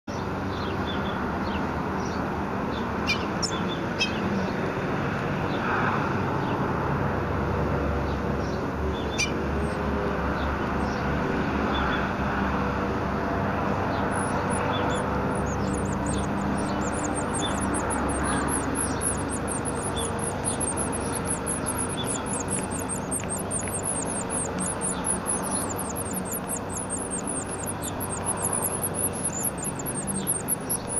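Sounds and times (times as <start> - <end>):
single bird chirps: 3.0 - 4.2, 13.9 - 30.9
steady rushing background noise: 8.7 - 30.9
nestlings cheeping rapidly: 11.6 - 30.9.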